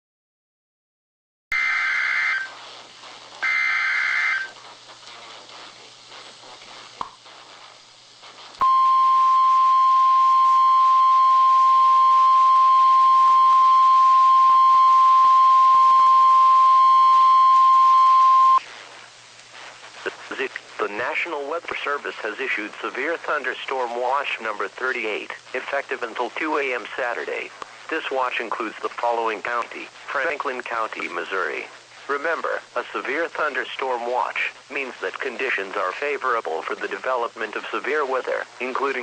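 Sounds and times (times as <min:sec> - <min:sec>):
buzzy two-pitch digital warble: 0:01.5 - 0:02.5, 0:03.4 - 0:04.5
steady warning alarm tone: 0:01.5 - 0:02.6, 0:03.4 - 0:04.6, 0:08.6 - 0:18.6
faint radio hiss: 0:01.7 - 0:39.0.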